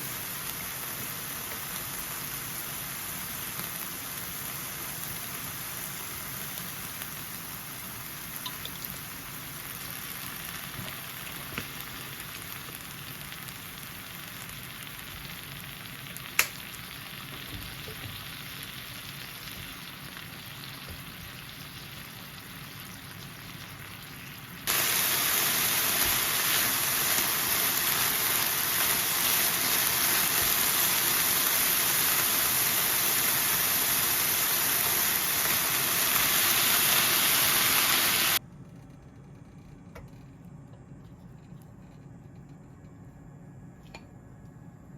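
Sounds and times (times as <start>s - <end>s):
food sizzling on hot plate: 0.0s - 38.4s
sharp click: 16.4s - 16.6s.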